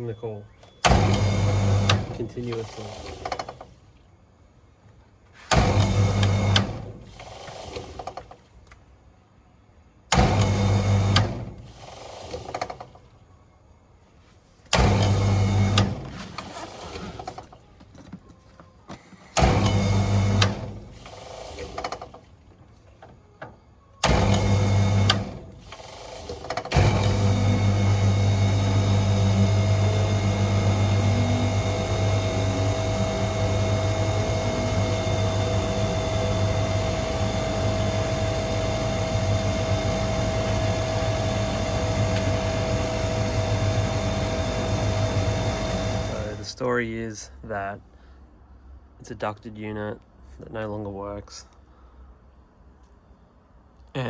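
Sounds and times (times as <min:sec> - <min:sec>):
contactor clunking: 0:00.0 - 0:04.0, 0:05.2 - 0:08.8, 0:10.1 - 0:13.2, 0:14.7 - 0:46.6
air conditioner mains hum: 0:00.0 - 0:54.0.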